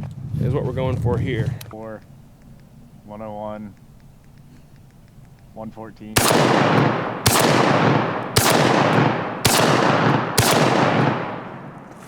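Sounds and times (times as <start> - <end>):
shotgun shots echoing: 6.1 - 12.0.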